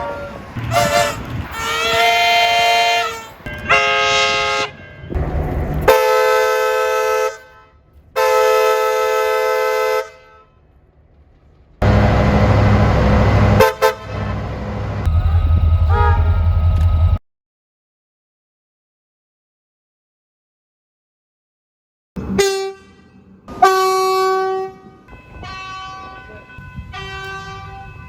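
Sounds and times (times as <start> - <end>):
train running rumble: 0.0 - 7.4, 10.6 - 17.2
train air horn blasts: 0.0 - 10.6, 11.8 - 16.6, 22.2 - 28.0.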